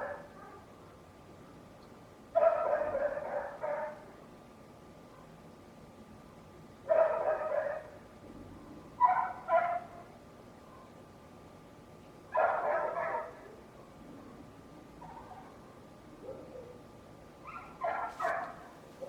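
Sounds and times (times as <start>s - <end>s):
dog barking: 0.0s - 0.7s, 2.4s - 4.1s, 6.9s - 8.0s, 9.0s - 10.1s, 12.3s - 13.6s, 16.2s - 16.8s, 17.4s - 19.0s.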